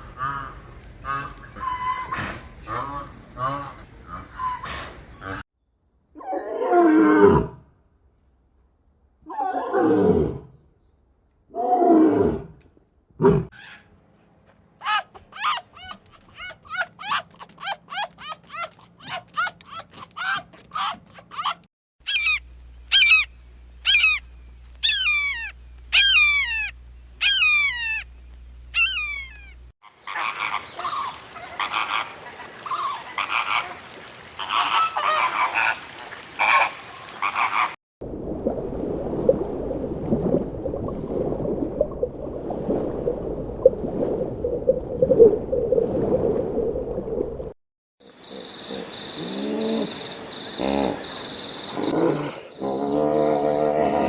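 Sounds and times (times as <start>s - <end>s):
noisy animal calls: 14.8s - 28.1s, 28.7s - 37.8s
low dense animal chorus: 29.9s - 37.7s.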